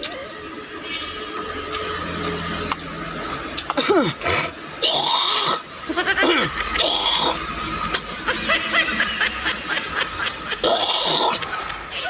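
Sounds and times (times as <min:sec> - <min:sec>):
person snickering and giggling: 0:05.5 - 0:07.4, 0:08.0 - 0:12.0.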